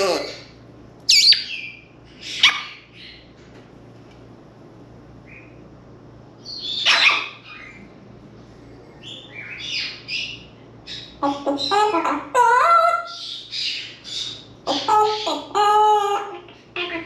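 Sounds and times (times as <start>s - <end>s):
parrot calling: 0.0s - 3.3s, 6.4s - 7.8s, 9.0s - 17.0s
soft parrot chirps: 1.1s - 3.2s, 6.4s - 7.8s.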